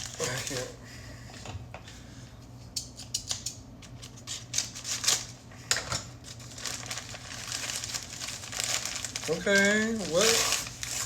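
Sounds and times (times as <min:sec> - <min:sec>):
snack packaging crinkling: 0:00.0 - 0:00.7, 0:06.2 - 0:11.0.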